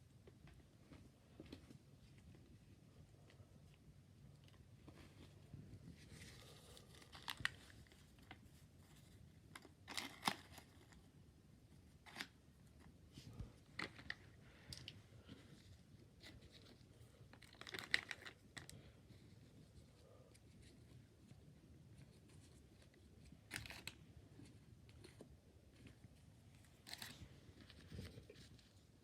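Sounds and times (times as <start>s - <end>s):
plastic packaging crinkling: 17.3s - 18.8s.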